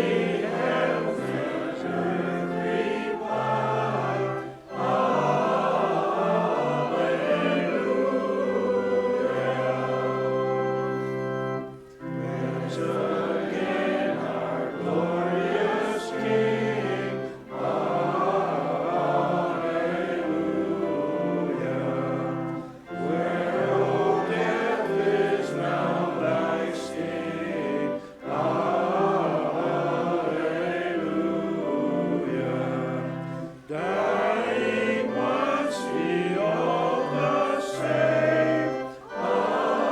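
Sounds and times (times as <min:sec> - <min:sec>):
congregation singing a hymn: 0:00.0 - 0:39.9
organ accompaniment: 0:00.0 - 0:39.9.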